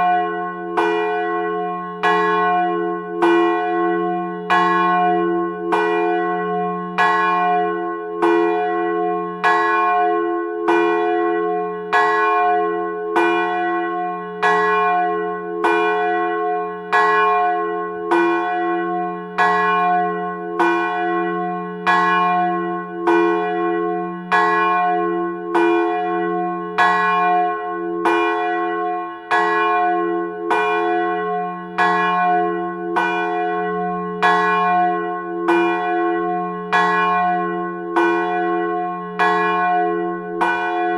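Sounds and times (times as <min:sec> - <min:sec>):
church bell tolling: 0:00.0 - 0:40.9.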